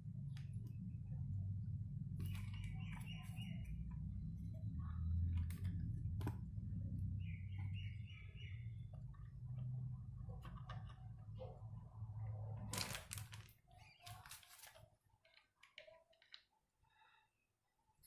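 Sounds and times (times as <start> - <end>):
steady low hum: 0.0 - 12.8
small bird chirping: 2.2 - 6.1, 7.0 - 9.8.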